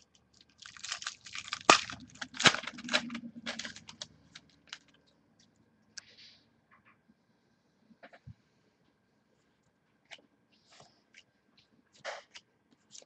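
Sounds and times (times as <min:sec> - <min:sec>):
trading cards clicking and rustling: 0:00.5 - 0:05.0.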